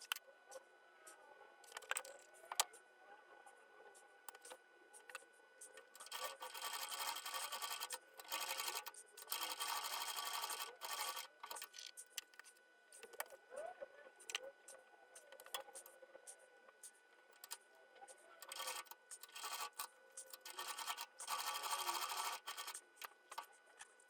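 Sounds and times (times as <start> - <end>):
sewing machine stitching: 6.0 - 11.9, 18.4 - 23.4.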